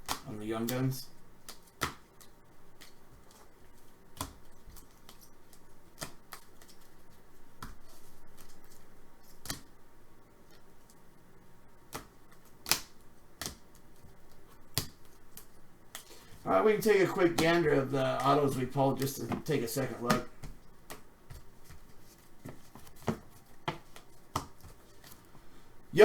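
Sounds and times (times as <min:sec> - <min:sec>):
cards tapped on a table: 0:01.5 - 0:02.0, 0:19.0 - 0:21.8, 0:22.4 - 0:24.8.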